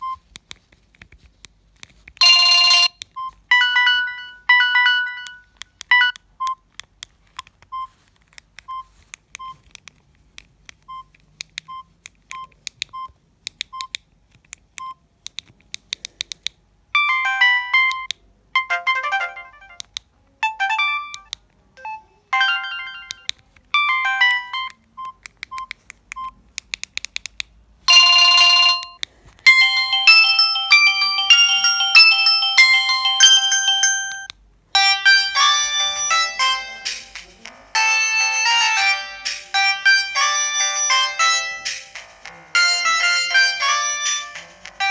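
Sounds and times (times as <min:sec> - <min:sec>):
mobile phone beeping ringtone: 0:02.2 - 0:06.6, 0:17.0 - 0:19.8, 0:20.4 - 0:25.7, 0:27.9 - 0:44.9.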